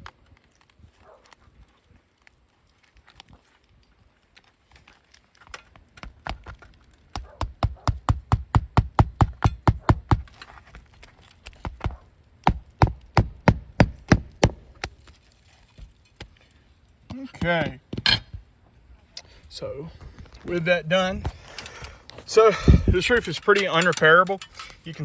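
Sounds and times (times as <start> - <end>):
hammer striking roofing nails: 6.0 - 10.4, 11.5 - 15.0.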